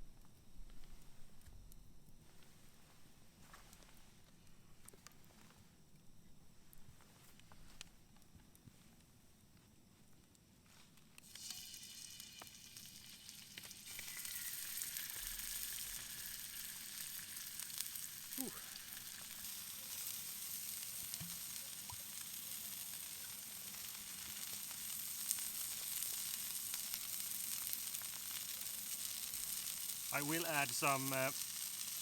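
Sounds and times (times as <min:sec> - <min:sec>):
chicken sizzling in oil: 0:11.2 - 0:32.0.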